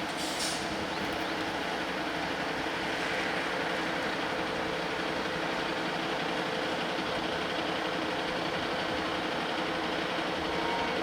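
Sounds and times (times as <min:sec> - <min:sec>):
diesel engine running: 0:00.8 - 0:11.0.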